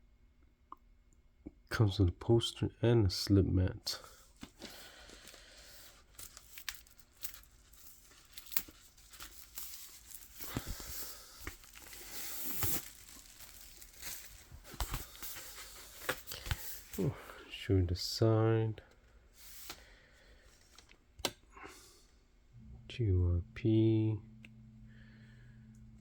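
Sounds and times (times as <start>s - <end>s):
packaging crinkling and rustling: 4.2s - 17.4s, 19.4s - 21.1s.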